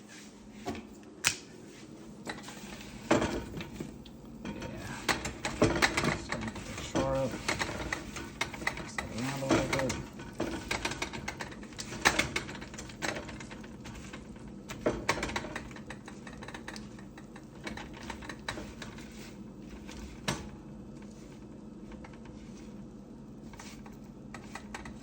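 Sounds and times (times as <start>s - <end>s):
kitchen utensils clattering: 3.1s - 19.0s.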